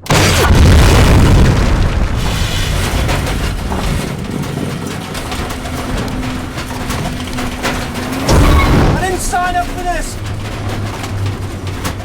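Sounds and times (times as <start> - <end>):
rocket blast rumble: 0.0 - 4.3
debris impacts: 0.0 - 12.0
vehicle noise: 0.0 - 12.0.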